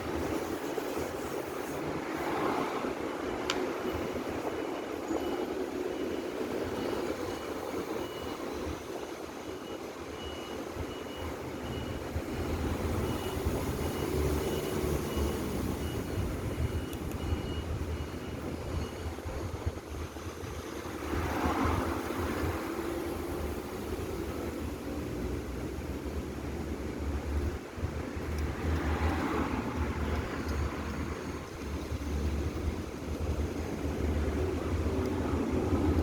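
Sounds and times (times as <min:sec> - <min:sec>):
reversing beeper: 0:03.8 - 0:19.8.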